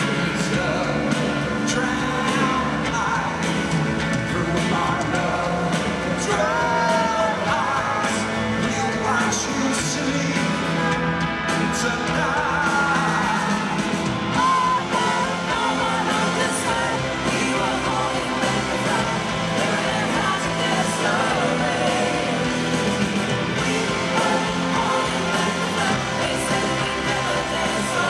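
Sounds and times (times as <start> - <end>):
live pop-rock band: 0.0 - 28.0
person singing: 0.0 - 28.0
people yelling: 11.8 - 28.0.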